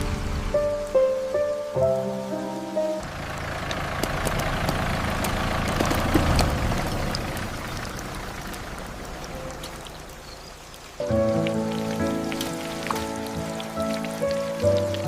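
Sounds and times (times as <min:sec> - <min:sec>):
raindrops pattering: 0:00.0 - 0:15.0
vehicle engine running: 0:03.0 - 0:10.2.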